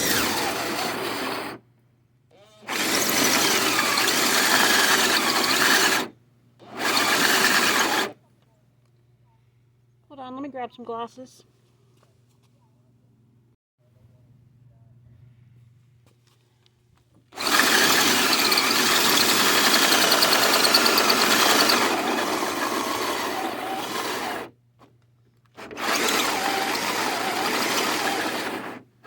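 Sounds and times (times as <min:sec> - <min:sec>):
drill cutting with hole saw: 0:00.0 - 0:01.6, 0:02.4 - 0:08.2, 0:17.4 - 0:24.5, 0:25.6 - 0:28.9.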